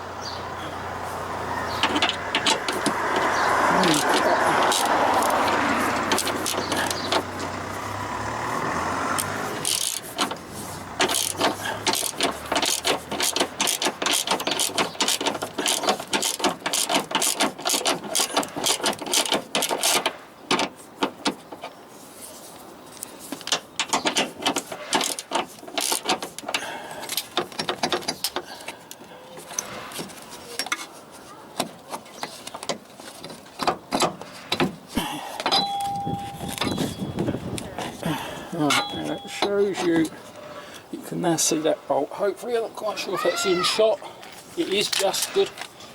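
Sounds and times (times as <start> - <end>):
socket ratchet clicking: 1.8 - 7.3, 9.2 - 10.4, 11.0 - 20.0.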